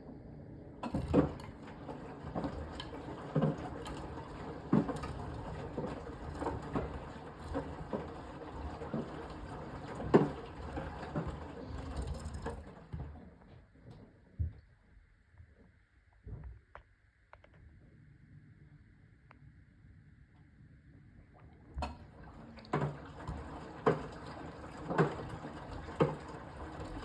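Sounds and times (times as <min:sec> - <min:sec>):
laundry thudding in washing machine: 0:00.8 - 0:13.2, 0:21.8 - 0:27.0.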